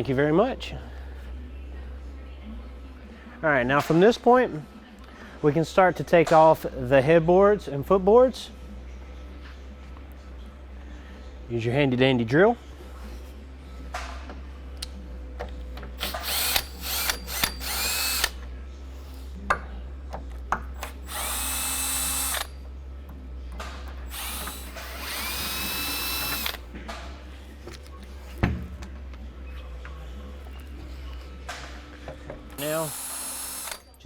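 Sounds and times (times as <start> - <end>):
power drill whirring: 16.0 - 18.4, 20.8 - 22.5, 24.1 - 26.7, 32.6 - 34.0.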